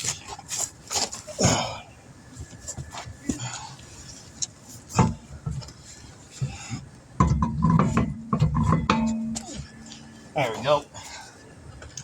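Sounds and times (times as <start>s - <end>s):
wheel clanks and knocks: 6.4s - 10.2s.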